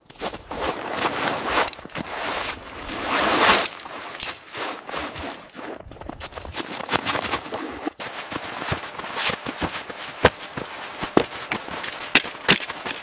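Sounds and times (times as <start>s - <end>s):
camp gear clattering and knocking: 1.2s - 2.1s, 2.8s - 7.3s, 11.0s - 13.0s.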